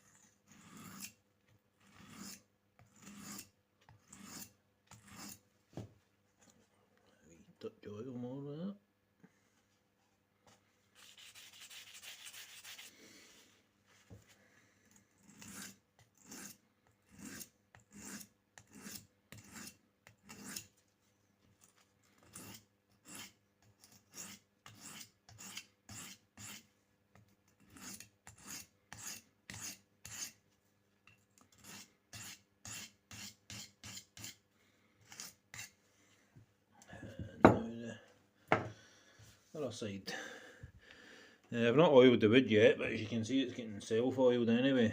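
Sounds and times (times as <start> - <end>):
knife scraping on sharpening stone: 0.0 - 1.2, 1.8 - 5.4, 15.2 - 20.7, 21.6 - 30.4, 31.1 - 34.4, 35.0 - 35.8.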